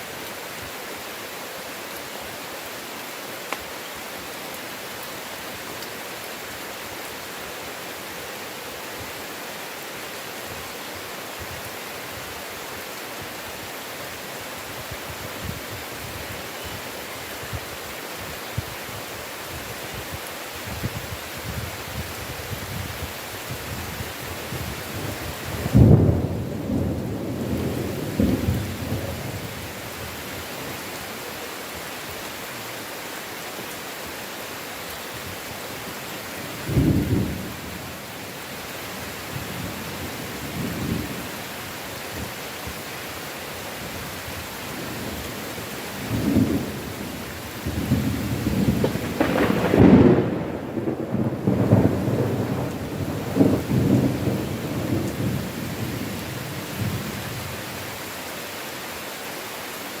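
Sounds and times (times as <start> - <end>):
heavy rain: 0.0 - 60.0
rolling thunder: 25.5 - 29.4, 47.6 - 56.1.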